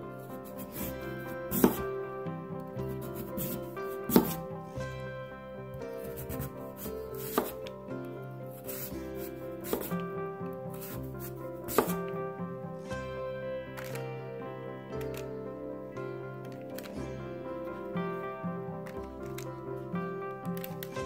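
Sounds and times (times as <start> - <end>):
instrumental music: 0.0 - 21.0.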